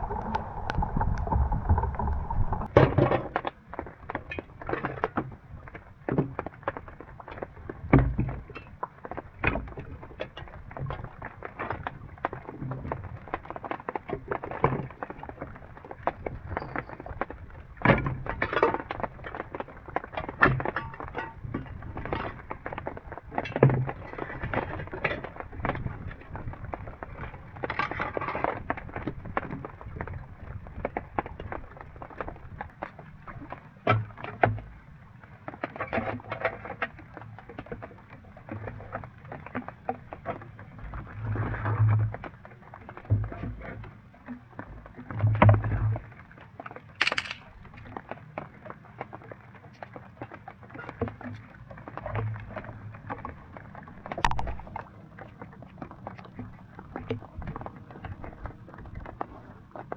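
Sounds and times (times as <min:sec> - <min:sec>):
irregular knocking and cracking: 0:47.0 - 0:47.9.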